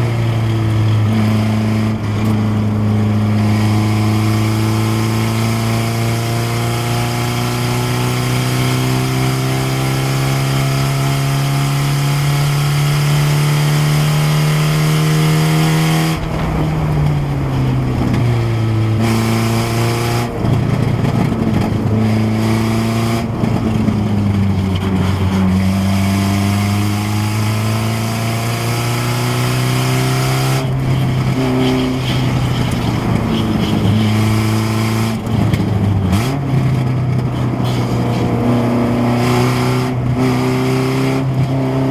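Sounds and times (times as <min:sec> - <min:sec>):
race car engine revving: 0:00.0 - 0:41.9.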